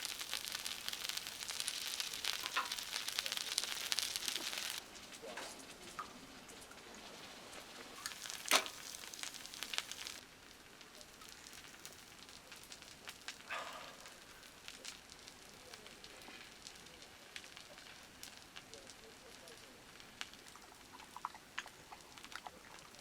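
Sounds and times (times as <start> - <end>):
sharp pops of fire: 0.0 - 6.2, 8.0 - 21.0
faint hiss: 0.0 - 23.0
fire crackling: 0.0 - 23.0.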